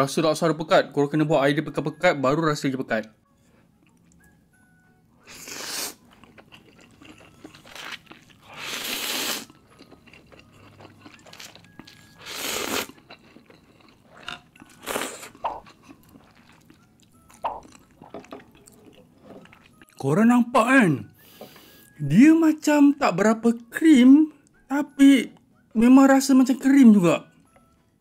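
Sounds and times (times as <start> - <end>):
quiet chewing: 3.4 - 4.3, 5.3 - 20.0
slurping noodles: 5.3 - 6.1, 8.4 - 9.5, 12.1 - 13.1.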